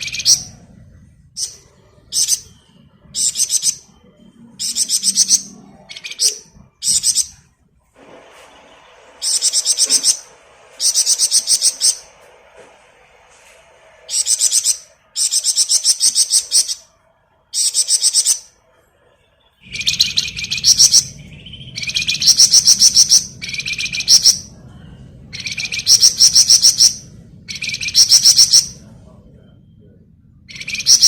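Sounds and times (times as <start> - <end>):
songbird trilling: 0.0 - 0.6, 1.4 - 7.4, 9.2 - 12.1, 14.1 - 16.9, 17.6 - 18.5, 19.6 - 24.6, 25.3 - 28.9, 30.5 - 31.0
low steady hum: 0.0 - 31.0.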